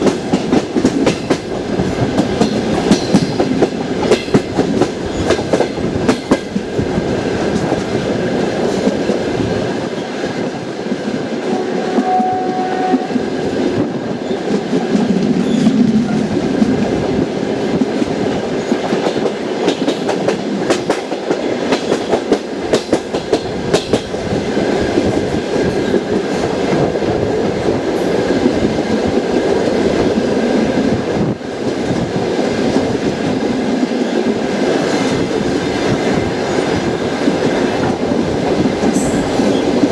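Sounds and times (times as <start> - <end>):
train wheels clattering: 0.0 - 10.2, 13.5 - 30.2
train running rush: 0.0 - 39.9.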